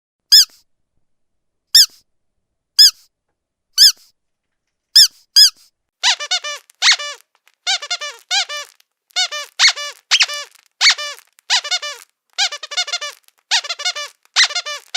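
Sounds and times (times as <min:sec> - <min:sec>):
squeaky dog toy squeaking: 0:00.3 - 0:00.6, 0:01.8 - 0:02.0, 0:02.8 - 0:03.1, 0:03.8 - 0:04.1, 0:05.0 - 0:14.9.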